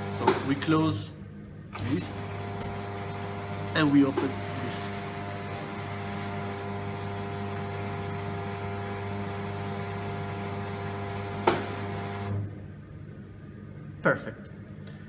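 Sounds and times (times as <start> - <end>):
pump motor humming: 1.8 - 12.4.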